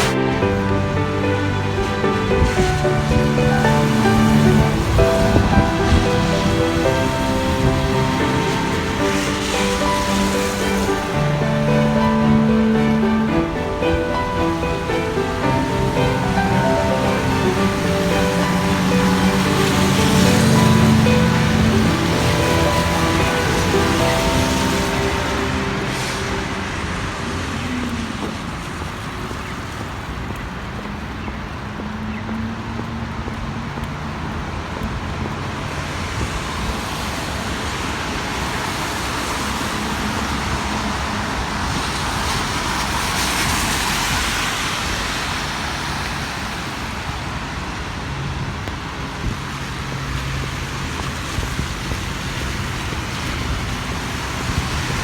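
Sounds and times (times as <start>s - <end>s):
low engine hum: 0.0s - 29.0s
vehicle passing: 0.0s - 37.6s
tyres hissing on wet road: 0.0s - 55.0s.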